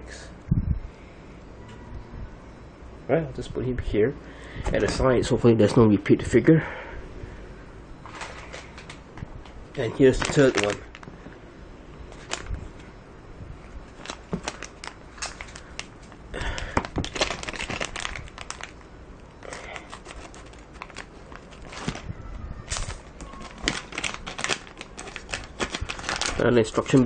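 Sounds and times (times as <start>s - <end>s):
plastic bag crinkling: 9.8s - 11.2s, 12.1s - 12.6s, 13.9s - 27.0s.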